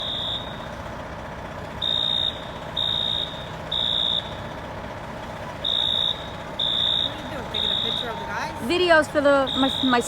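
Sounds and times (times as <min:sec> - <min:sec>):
fire alarm high-pitched beeps: 0:00.0 - 0:00.7, 0:01.8 - 0:04.5, 0:05.6 - 0:08.2, 0:09.4 - 0:10.0.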